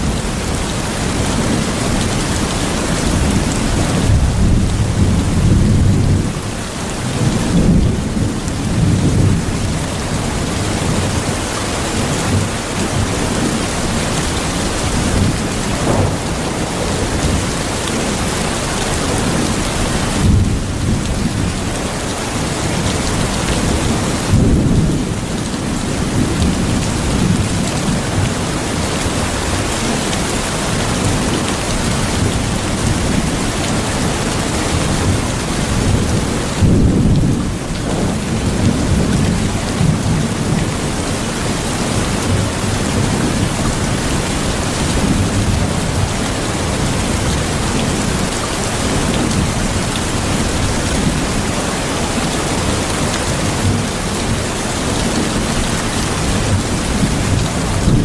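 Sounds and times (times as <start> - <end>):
heavy rain hissing: 0.0 - 58.0
low thunder rumbling: 12.3 - 21.8, 34.6 - 41.0.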